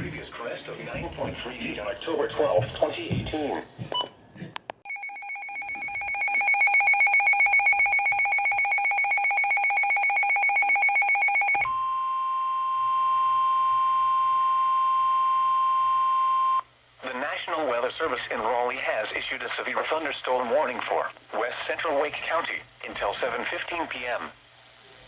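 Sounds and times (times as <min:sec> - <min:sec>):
steady warning alarm tone: 0:04.8 - 0:16.6.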